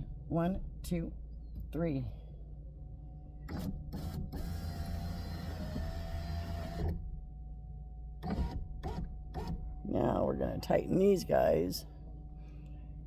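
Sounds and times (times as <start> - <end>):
power window motor whine: 3.4 - 7.2, 8.2 - 9.8.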